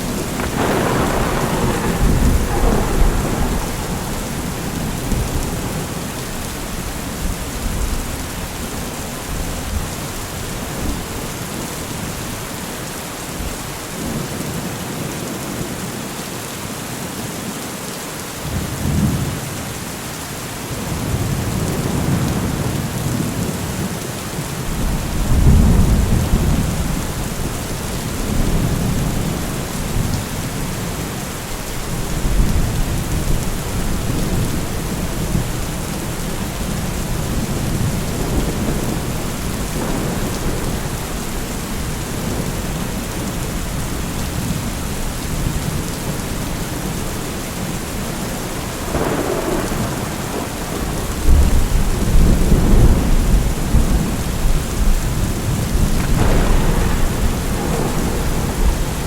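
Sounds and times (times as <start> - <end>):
rolling thunder: 0.0 - 12.4, 24.6 - 59.0
steady rain: 0.0 - 59.0.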